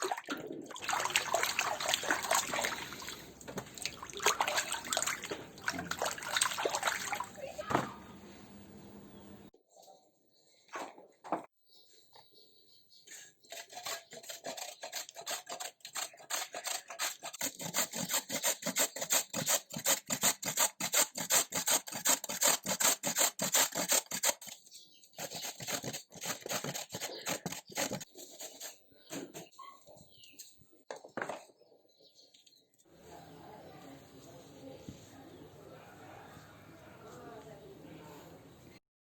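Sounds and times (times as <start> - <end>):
root being grated by hand: 13.4 - 24.6, 25.2 - 28.7.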